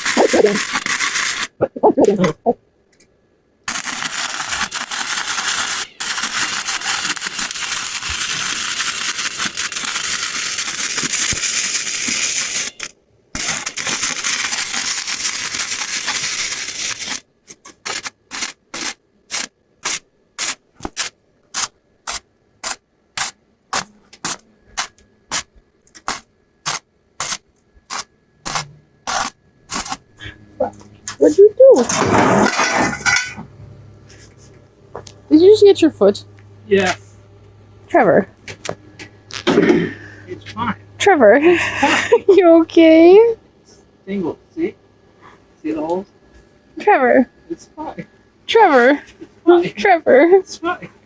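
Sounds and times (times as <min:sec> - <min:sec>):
welder arc crackling and hissing: 0:00.0 - 0:01.6, 0:03.7 - 0:30.1.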